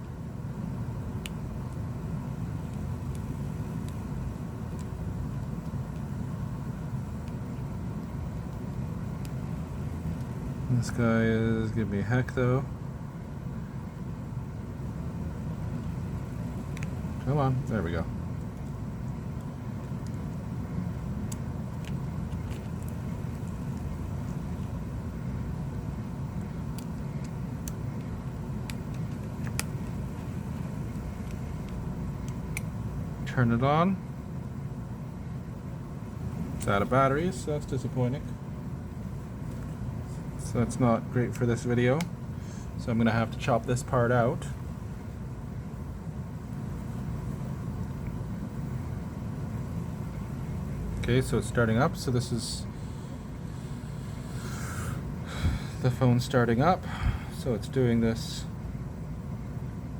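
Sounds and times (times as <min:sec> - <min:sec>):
low background rumble: 0:00.0 - 0:59.9.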